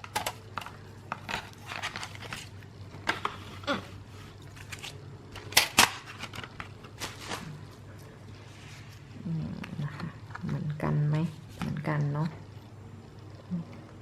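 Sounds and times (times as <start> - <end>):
packaging crinkling: 4.4 - 8.2.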